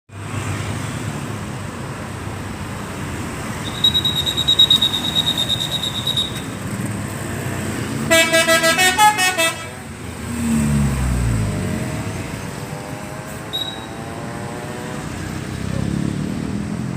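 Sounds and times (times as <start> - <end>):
multi-tone bus horn: 8.0 - 9.9.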